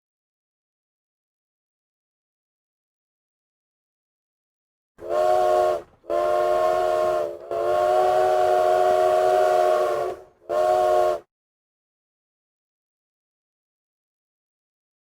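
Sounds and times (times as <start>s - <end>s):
chime train whistle blasts: 5.0s - 11.2s.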